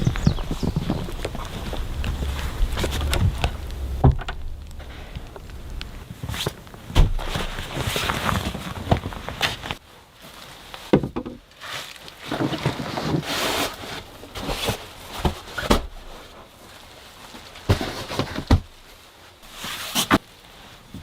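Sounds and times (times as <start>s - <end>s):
footsteps in snow: 0.0s - 8.2s.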